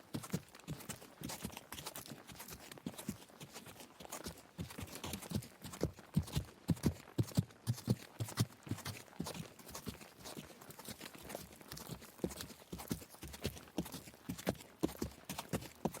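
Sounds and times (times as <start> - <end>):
horse hooves thudding on soft ground: 0.0 - 16.0.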